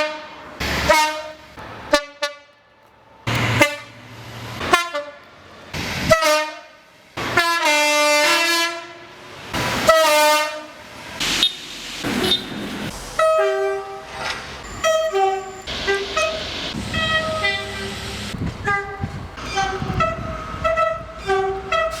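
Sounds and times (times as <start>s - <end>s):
train horn long blasts: 0.0s - 2.4s, 4.6s - 5.3s, 6.1s - 9.1s, 9.8s - 10.8s, 13.2s - 22.0s
train horn short toots: 0.9s - 2.5s, 6.1s - 6.8s, 7.4s - 9.0s, 13.2s - 18.0s, 18.6s - 22.0s.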